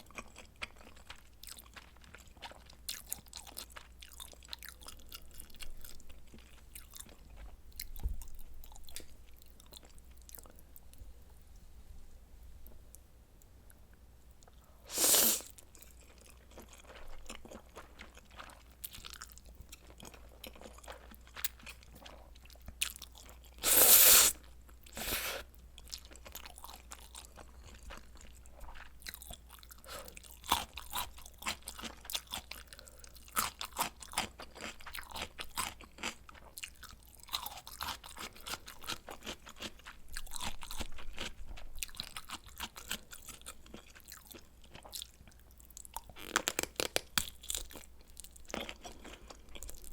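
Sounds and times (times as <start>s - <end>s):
person biting and chewing food: 20.0s - 32.5s, 45.9s - 49.9s.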